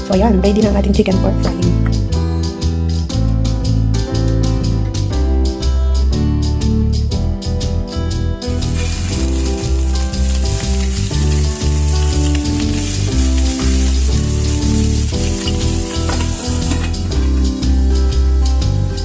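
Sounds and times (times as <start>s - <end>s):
background music with bass line: 0.0s - 19.0s
chicken sizzling in hot oil: 8.5s - 18.2s.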